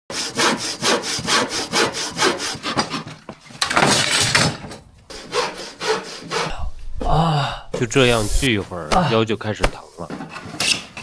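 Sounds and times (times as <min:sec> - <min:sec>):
hand saw cutting wood: 0:00.1 - 0:04.5, 0:05.1 - 0:07.0.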